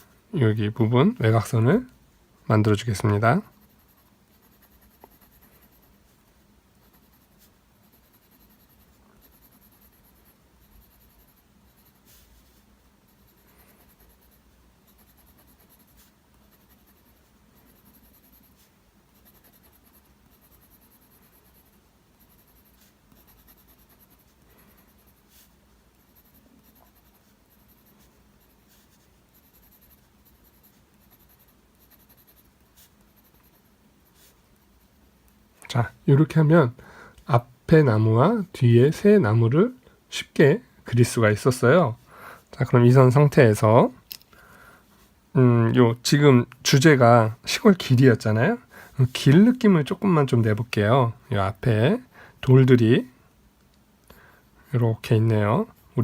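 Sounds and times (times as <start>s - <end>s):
pencil scratching on paper: 3.5s - 34.9s.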